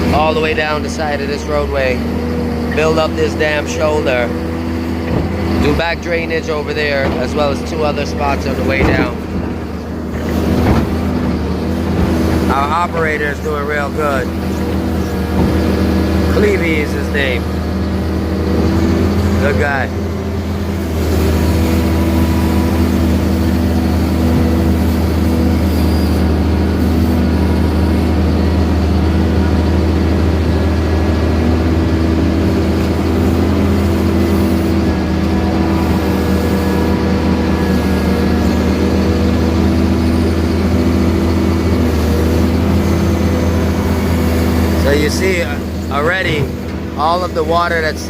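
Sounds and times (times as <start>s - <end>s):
excavator diesel engine running: 0.0s - 48.0s.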